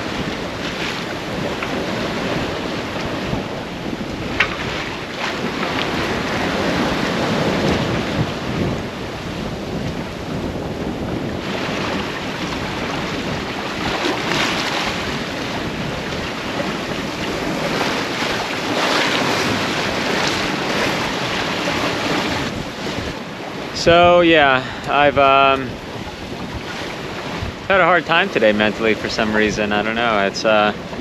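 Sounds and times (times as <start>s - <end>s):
water rushing along hull: 0.0s - 31.0s
wind buffeting microphone: 0.0s - 31.0s.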